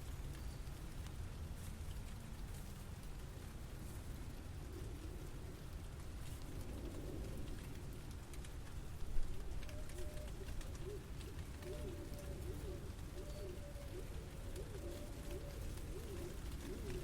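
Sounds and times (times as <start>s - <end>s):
low city rumble: 0.0s - 17.0s
pigeon cooing: 9.4s - 17.0s.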